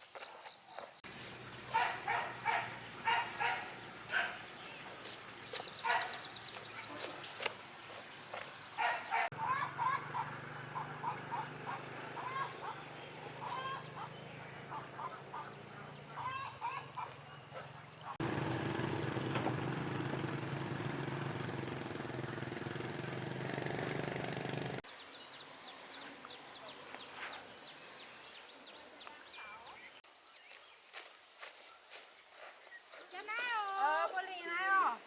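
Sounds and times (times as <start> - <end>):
motor running steadily: 18.2 - 24.8.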